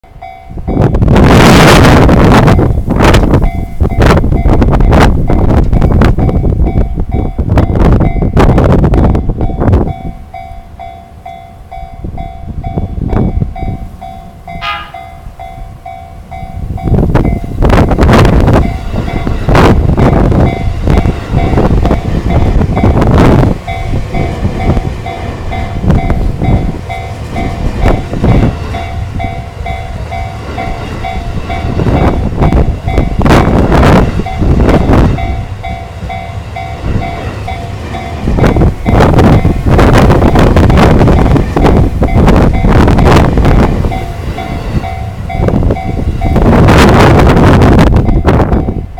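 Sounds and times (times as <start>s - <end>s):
electric train passing: 0.0s - 48.9s
wind gusts buffeting microphone: 0.0s - 48.9s
level crossing warning bell: 0.1s - 48.9s
train horn blast: 14.5s - 15.3s.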